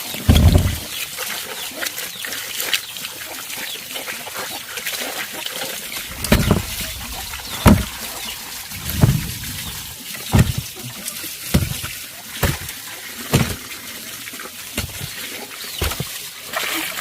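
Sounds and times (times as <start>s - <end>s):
heavy water splashes: 0.0s - 1.4s, 5.0s - 17.0s
water trickling: 0.0s - 1.5s, 4.4s - 17.0s.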